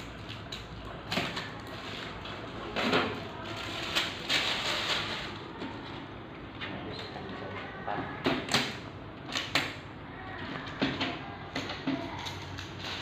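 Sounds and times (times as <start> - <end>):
packaging scraping and rustling: 0.1 - 5.9.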